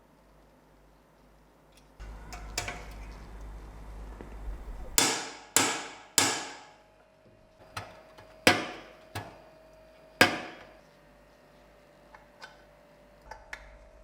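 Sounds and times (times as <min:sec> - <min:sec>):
hammer striking metal: 0:05.0 - 0:06.8, 0:08.5 - 0:08.9, 0:10.2 - 0:10.7.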